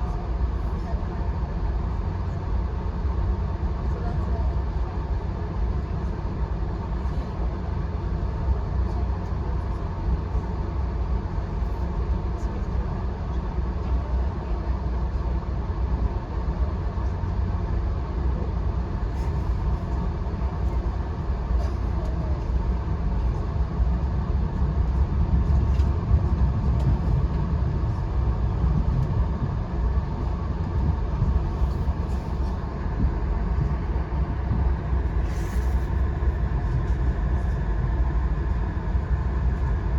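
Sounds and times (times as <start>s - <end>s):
train rumbling on track: 0.0s - 39.9s.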